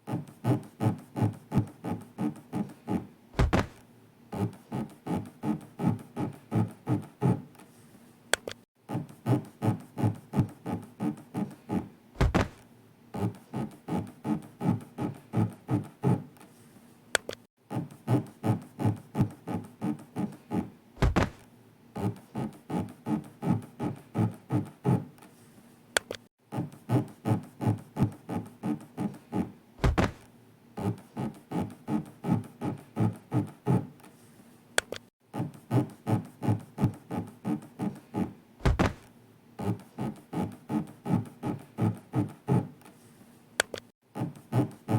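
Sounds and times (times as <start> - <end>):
heavy thunk: 3.4 - 3.8, 12.2 - 12.6, 21.0 - 21.4, 29.8 - 30.3, 38.6 - 39.1.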